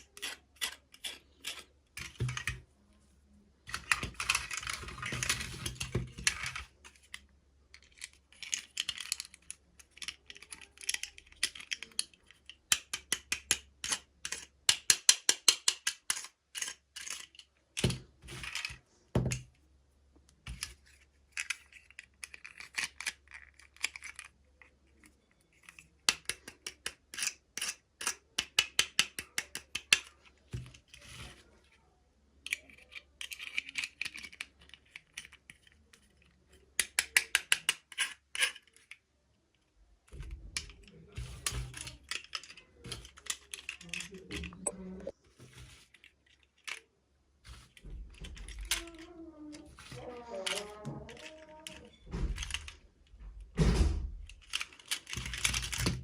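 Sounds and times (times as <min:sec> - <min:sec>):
small plastic clicks and taps: 0:07.8 - 0:19.5, 0:25.0 - 0:31.2, 0:32.4 - 0:39.0.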